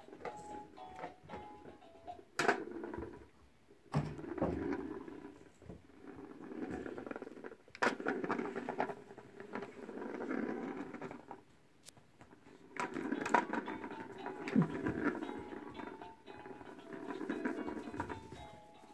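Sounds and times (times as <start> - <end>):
rustling and scratching in bedding: 16.6 - 18.9.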